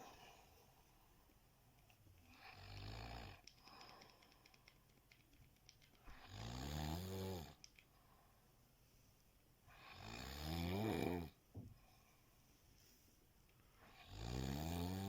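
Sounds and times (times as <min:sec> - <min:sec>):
person snoring: 0:09.7 - 0:11.4, 0:13.9 - 0:15.0.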